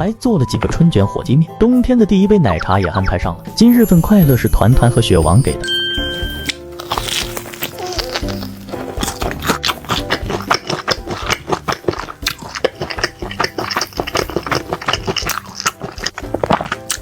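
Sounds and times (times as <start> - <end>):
chewing crunchy food: 6.4 - 17.0
wet mouth sounds: 6.4 - 17.0.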